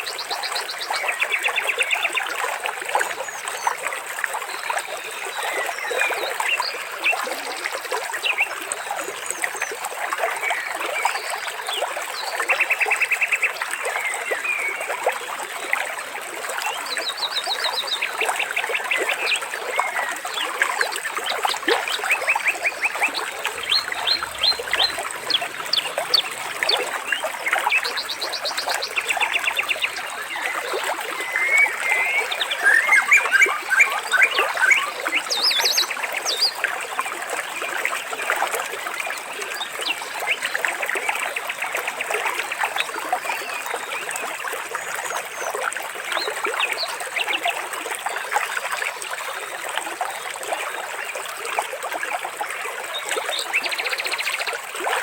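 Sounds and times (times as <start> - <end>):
stream running: 0.0 - 55.0
small birds trilling and chirping: 20.2 - 36.8.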